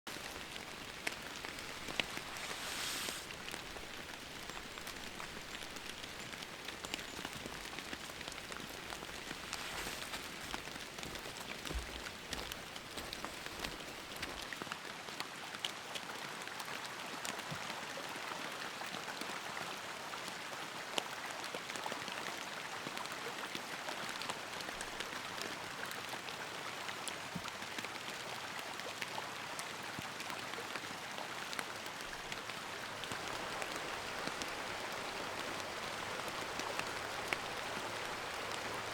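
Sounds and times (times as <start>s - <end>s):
steady rain falling: 0.0s - 38.9s
raindrops hitting sharply: 0.1s - 14.6s.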